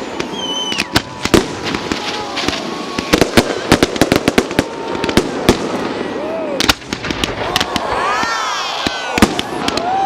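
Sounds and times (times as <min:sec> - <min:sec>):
whistling firework falling pitch: 0:00.0 - 0:04.4
crackling firework bangs: 0:00.0 - 0:10.0
firework bangs: 0:00.0 - 0:10.0.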